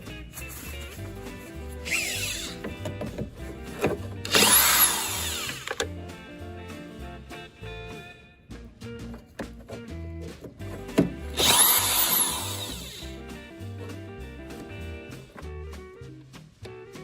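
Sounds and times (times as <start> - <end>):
background music: 0.0 - 17.0
power drill spinning: 1.0 - 5.9, 10.8 - 13.2.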